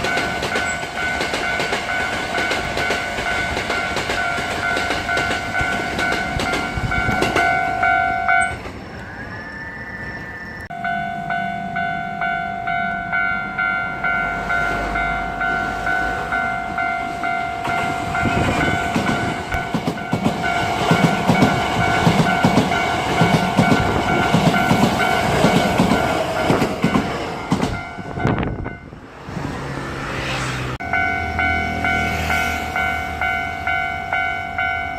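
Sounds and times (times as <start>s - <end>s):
level crossing bell dinging: 0.0s - 8.6s, 10.7s - 23.4s
electric train passing: 0.0s - 34.9s.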